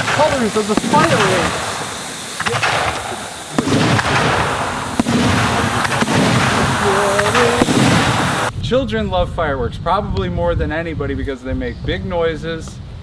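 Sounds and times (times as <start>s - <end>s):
firework hissing and crackling: 0.0s - 8.5s
firework pops: 0.0s - 8.5s.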